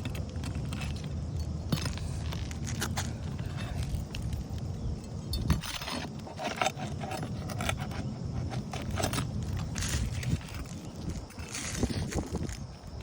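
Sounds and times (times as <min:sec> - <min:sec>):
metal tool scraping shingles: 0:05.1 - 0:12.6.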